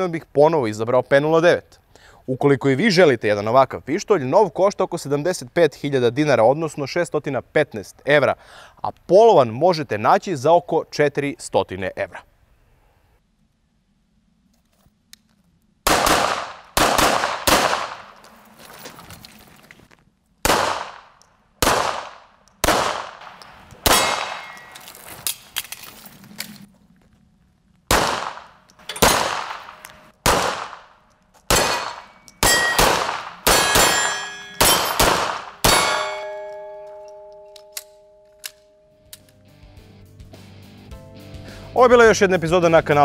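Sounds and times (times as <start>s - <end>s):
pistol shots: 15.8s - 18.2s, 20.4s - 24.8s, 27.9s - 36.8s
metallic clang and ring: 31.6s - 32.9s, 33.5s - 35.1s, 35.7s - 39.1s.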